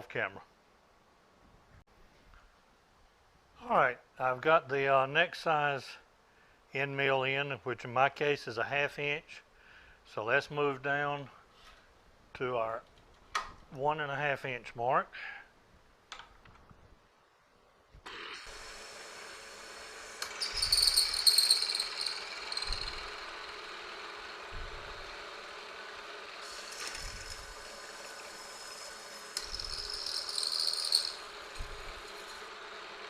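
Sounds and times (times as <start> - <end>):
milling machine running: 18.1 - 33.0
high-pitched cutting whine: 20.2 - 25.6.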